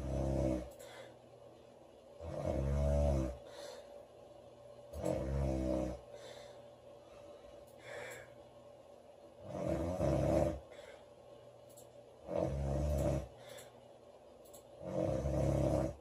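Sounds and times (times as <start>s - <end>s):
woman snoring: 0.0s - 0.8s, 2.2s - 3.5s, 5.0s - 6.2s, 9.4s - 10.8s, 12.2s - 13.4s, 14.8s - 16.0s.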